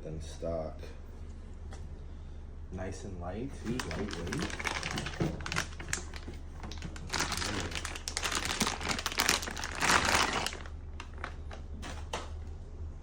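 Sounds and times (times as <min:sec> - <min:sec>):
plastic packaging crinkling: 0:03.6 - 0:12.2.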